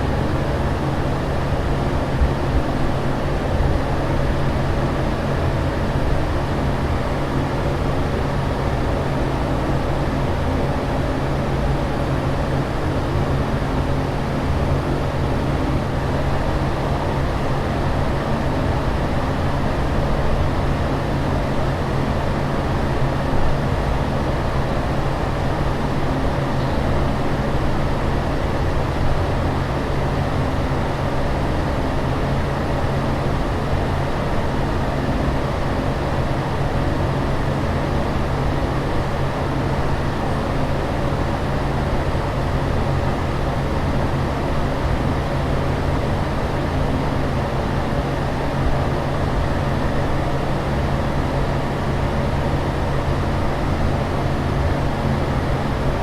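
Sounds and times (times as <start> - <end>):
airliner cabin drone: 0.0 - 56.0.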